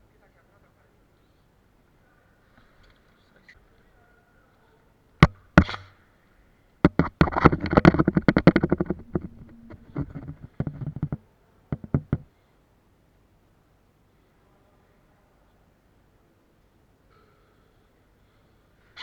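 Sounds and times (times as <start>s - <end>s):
airsoft guns firing: 5.2s - 5.9s.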